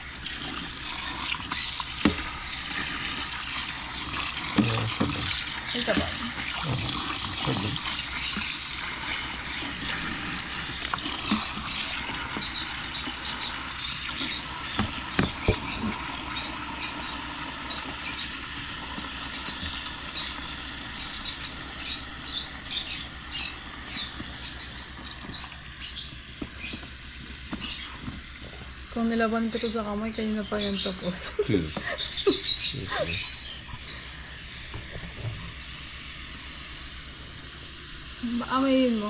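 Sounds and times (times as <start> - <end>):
washing machine churning water: 0.0 - 39.0
washing machine knocks: 14.8 - 16.0.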